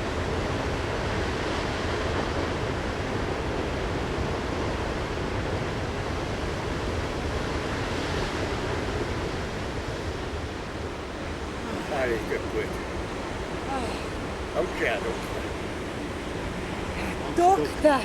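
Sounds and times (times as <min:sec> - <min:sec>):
waterfall rushing: 0:11.2 - 0:18.0.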